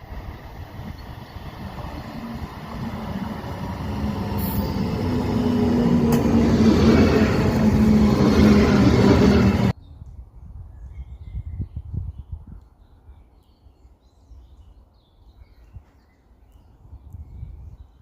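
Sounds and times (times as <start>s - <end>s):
approaching motor: 1.2s - 9.7s.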